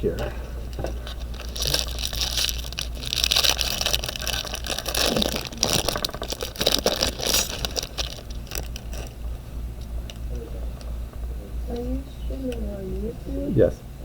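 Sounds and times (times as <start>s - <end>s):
foil wrapper crinkling and tearing: 1.0s - 9.2s.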